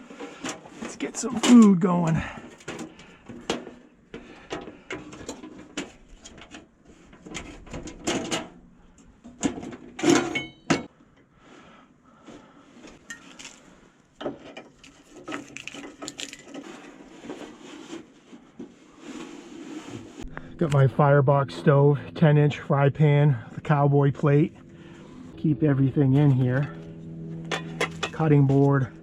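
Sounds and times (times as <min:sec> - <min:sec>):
metallic clank and ring: 0:10.2 - 0:10.9.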